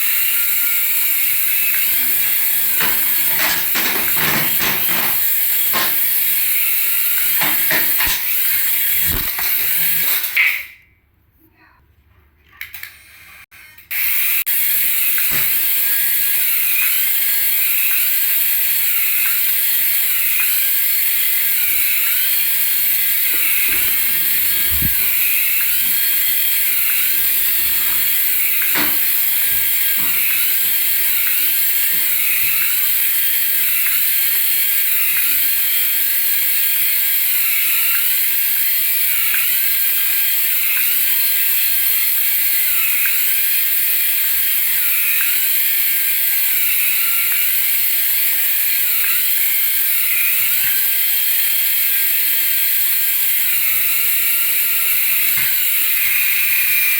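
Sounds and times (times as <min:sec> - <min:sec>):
small electric motor whirring: 0:00.0 - 0:10.4, 0:12.7 - 0:56.9
electronic stepped tones: 0:21.5 - 0:31.6.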